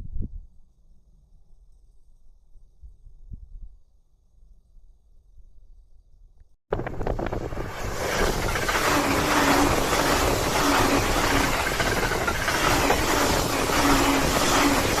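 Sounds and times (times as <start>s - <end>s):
low hum: 4.7s - 15.0s
electric train passing: 7.3s - 15.0s.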